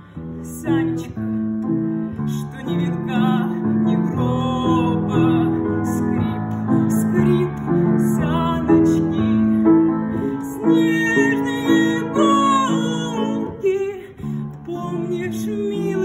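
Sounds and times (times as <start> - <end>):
women singing slow melody: 10.2 - 16.0.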